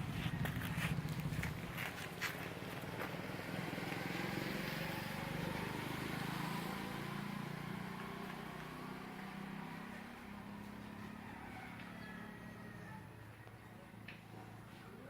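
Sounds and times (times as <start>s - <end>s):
vehicle engine running: 0.0s - 11.2s.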